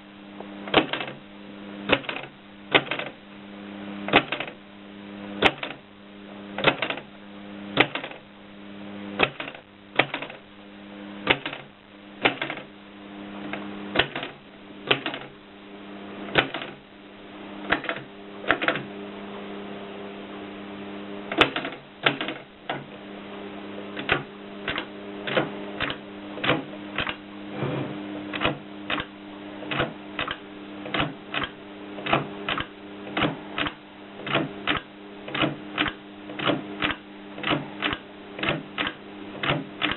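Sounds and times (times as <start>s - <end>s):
typewriter key strikes: 0.7s - 1.2s, 1.9s - 3.1s, 4.1s - 4.6s, 6.6s - 7.0s, 7.8s - 8.2s, 11.3s - 11.6s, 14.0s - 15.3s, 21.3s - 22.4s, 29.7s - 39.9s.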